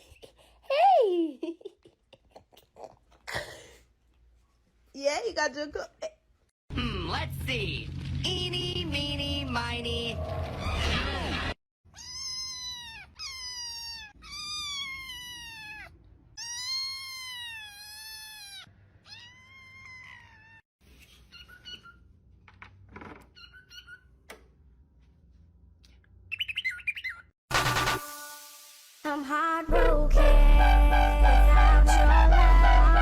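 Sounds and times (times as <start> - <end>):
small animal high drawn-out cries: 11.9 - 20.6.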